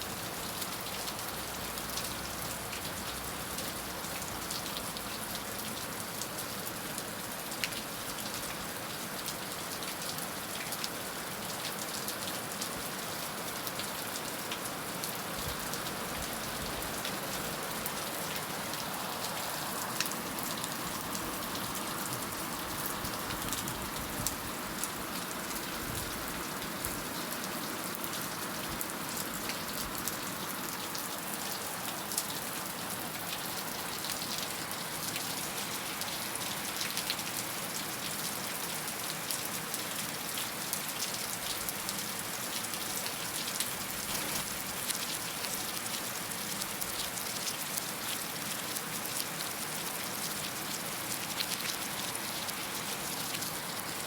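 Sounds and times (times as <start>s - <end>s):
raindrops ticking on hard surface: 43.4s - 45.8s
heavy rain hissing: 43.8s - 44.9s.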